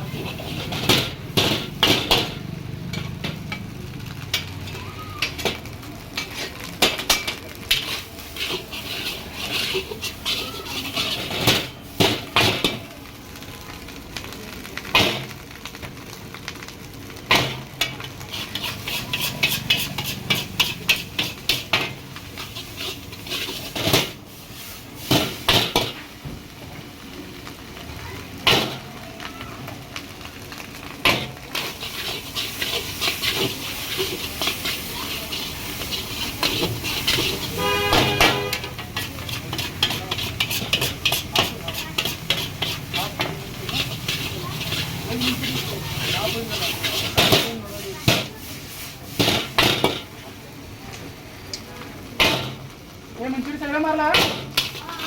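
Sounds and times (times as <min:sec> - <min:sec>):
rice sizzling: 0:00.0 - 0:55.0
metal ladle clanking against wok: 0:00.2 - 0:03.7, 0:04.3 - 0:12.8, 0:17.3 - 0:24.2, 0:31.0 - 0:48.3, 0:49.2 - 0:50.1.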